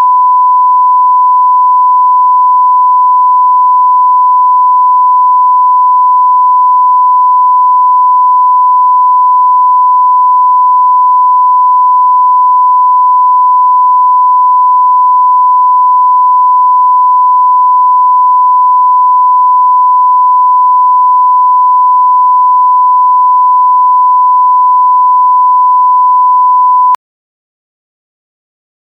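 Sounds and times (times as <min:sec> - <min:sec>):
censor beep tone: 0:00.0 - 0:27.0.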